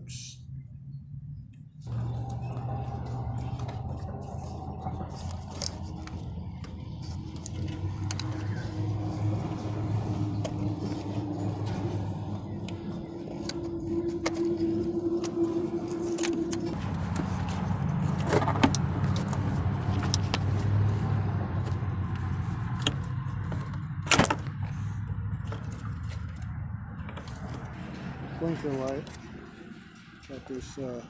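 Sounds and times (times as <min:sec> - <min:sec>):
car engine idling: 0:01.8 - 0:31.0
clicks and rattles of parts handled: 0:01.9 - 0:09.8
high tone: 0:07.3 - 0:18.0.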